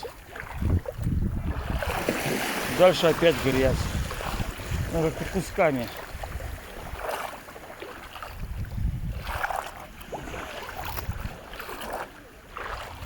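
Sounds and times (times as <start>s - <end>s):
seawater sloshing and splashing: 0.0s - 13.0s
wind rumble on microphone: 0.0s - 13.0s.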